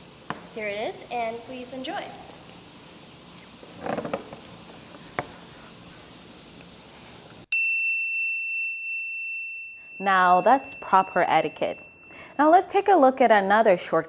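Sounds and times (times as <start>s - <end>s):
faint room hiss: 0.0s - 8.1s, 9.4s - 14.0s
bell-like ding: 7.5s - 12.8s.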